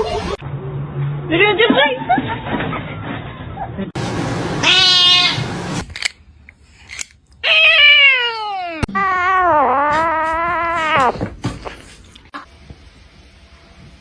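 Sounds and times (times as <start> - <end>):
cat meowing: 4.6 - 5.4, 7.4 - 11.3.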